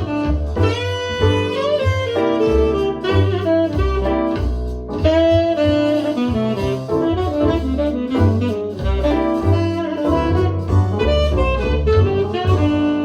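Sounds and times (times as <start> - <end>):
jazz saxophone lead: 0.0 - 13.0
walking bass line: 0.0 - 13.0.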